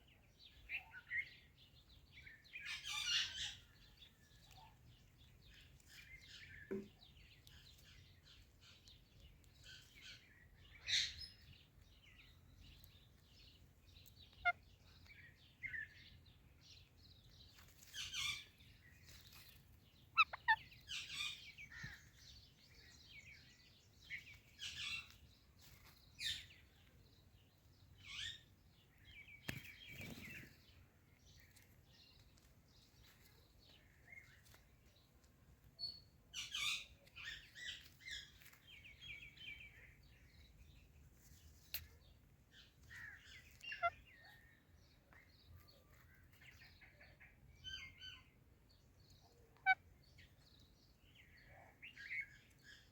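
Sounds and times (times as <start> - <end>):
parakeet chirping: 20.2 - 21.6.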